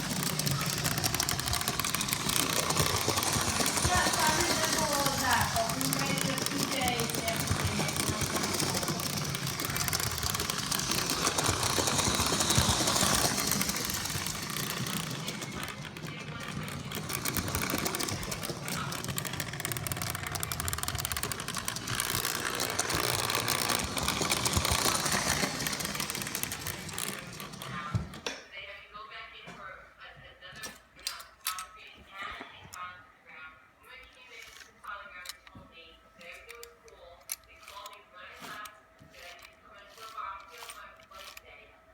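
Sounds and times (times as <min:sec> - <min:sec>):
model train motor whirring: 0:00.0 - 0:28.2, 0:34.4 - 0:35.4, 0:36.4 - 0:41.6.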